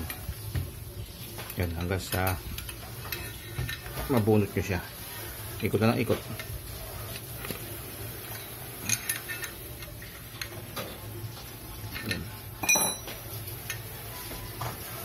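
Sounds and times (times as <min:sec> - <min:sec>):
ringing metal clink: 0:12.0 - 0:13.8.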